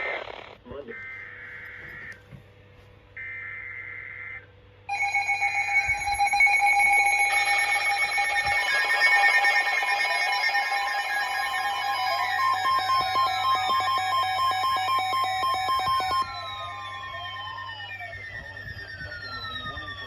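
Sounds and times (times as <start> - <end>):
buzzing data tone: 4.9 - 20.0
multi-pitch alert tone: 4.9 - 20.0.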